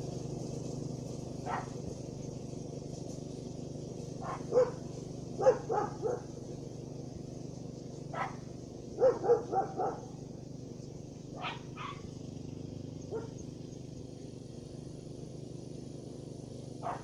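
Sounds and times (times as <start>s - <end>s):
steady low hum: 0.0s - 17.0s
dog barking: 1.4s - 1.8s, 4.2s - 4.8s, 5.4s - 6.2s, 8.1s - 8.4s, 9.0s - 10.1s, 11.4s - 12.1s, 13.1s - 13.4s, 16.8s - 17.0s.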